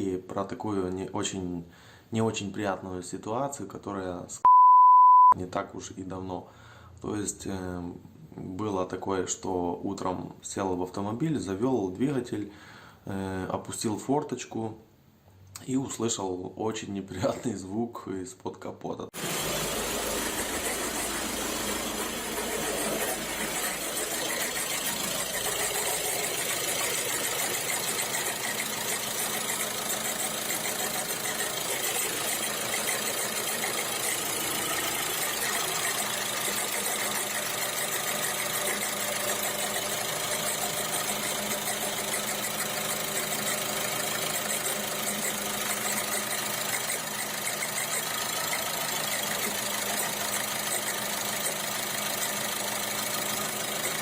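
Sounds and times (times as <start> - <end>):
diesel engine idling: 19.2 - 46.3.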